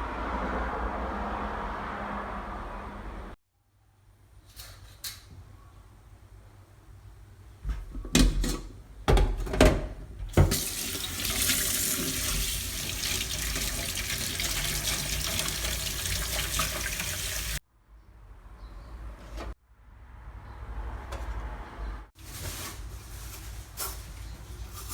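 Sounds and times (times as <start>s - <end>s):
tap running into a sink: 10.3s - 17.6s.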